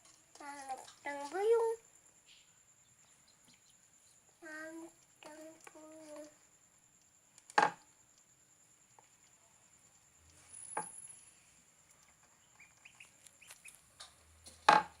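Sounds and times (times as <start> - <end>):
chicks peeping: 12.3 - 14.6.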